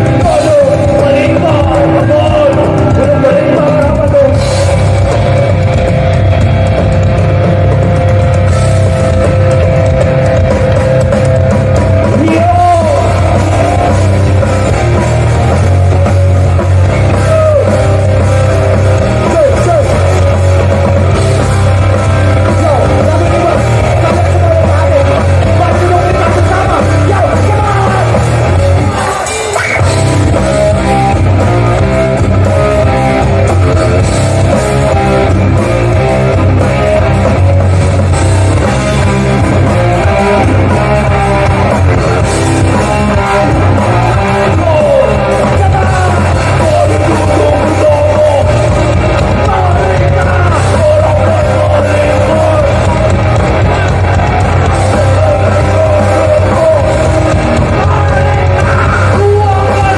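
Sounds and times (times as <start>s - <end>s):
punk band playing loud: 0.0s - 59.9s
shouted vocals: 22.0s - 31.7s, 39.6s - 59.9s.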